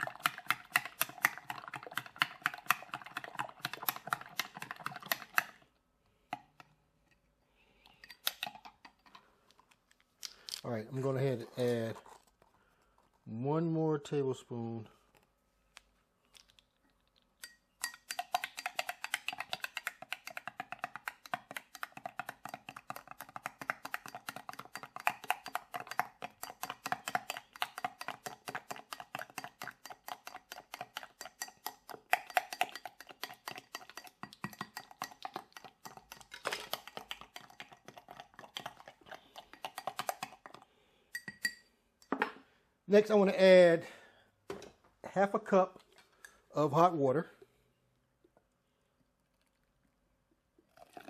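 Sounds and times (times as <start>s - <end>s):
utensil clicking against container: 17.4s - 40.6s.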